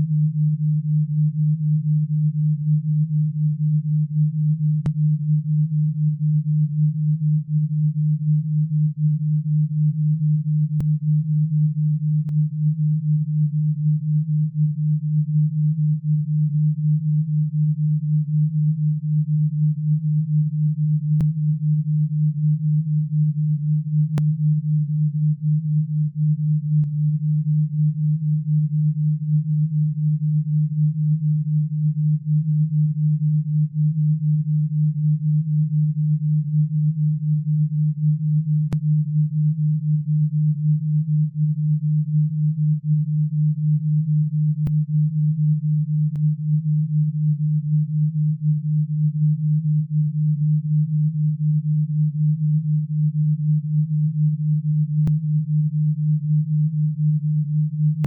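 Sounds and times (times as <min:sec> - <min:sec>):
low pulsing pure tone: 0:00.0 - 0:58.0.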